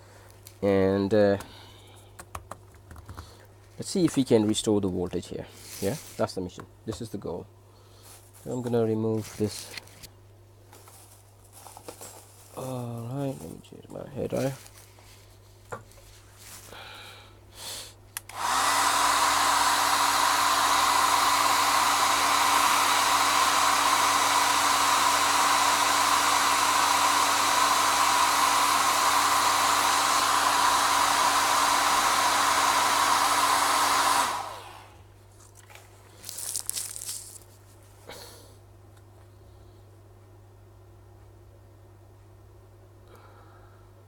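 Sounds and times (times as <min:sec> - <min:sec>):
hot air station blowing: 0:16.7 - 0:35.0.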